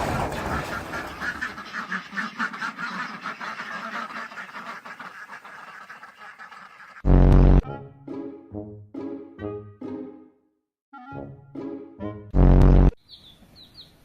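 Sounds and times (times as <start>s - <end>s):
rapid animal calls: 0.5s - 7.0s.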